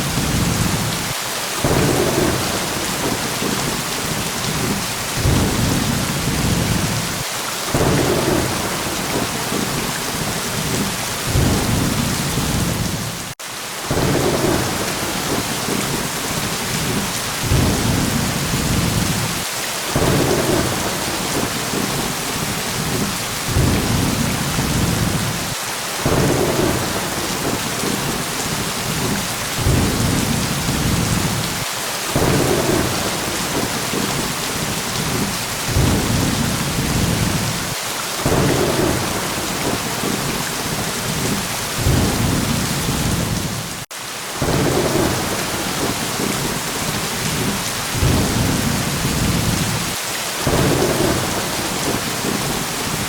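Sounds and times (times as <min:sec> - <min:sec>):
heavy rain hissing: 0:00.0 - 0:53.0
thunder rolling: 0:10.6 - 0:16.0, 0:28.8 - 0:31.5, 0:47.4 - 0:49.9.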